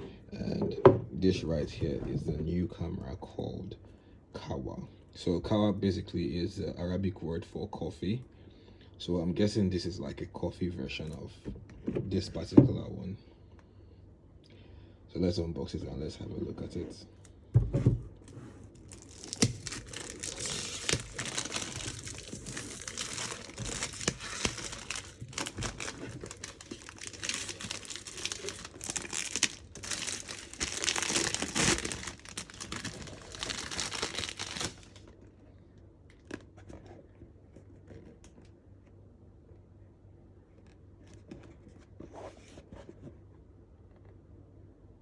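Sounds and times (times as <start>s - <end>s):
plastic wrapping crackling: 18.2s - 35.2s.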